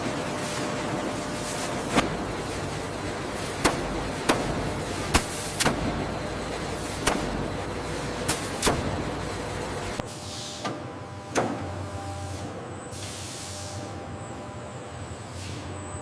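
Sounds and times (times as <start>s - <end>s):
steady machinery noise: 0.0s - 10.1s.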